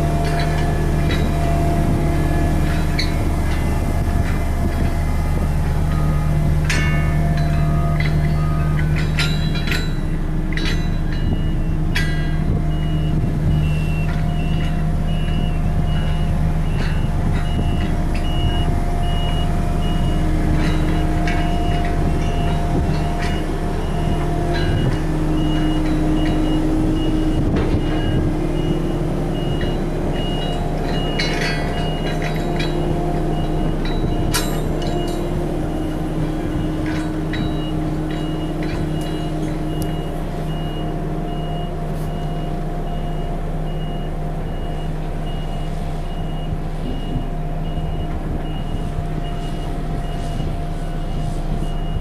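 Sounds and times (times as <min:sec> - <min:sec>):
diesel engine running: 0:00.0 - 0:52.0
metallic clanks: 0:00.0 - 0:52.0
reversing alarm beeping: 0:00.0 - 0:52.0.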